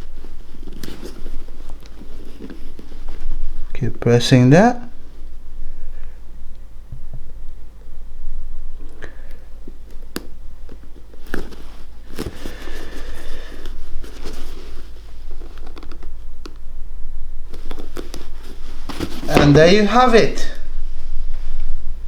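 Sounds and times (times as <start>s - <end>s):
shoe being handled: 0.0s - 3.7s, 9.6s - 16.6s, 17.5s - 20.5s
steady low hum: 0.0s - 22.0s.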